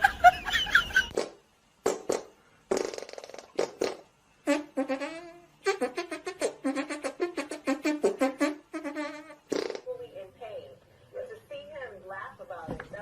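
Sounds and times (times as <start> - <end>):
brass instrument blasts: 4.4 - 9.6.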